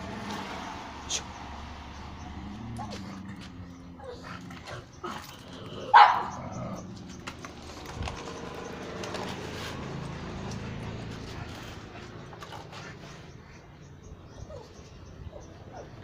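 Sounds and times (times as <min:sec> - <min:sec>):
dog barking: 0:05.9 - 0:06.4.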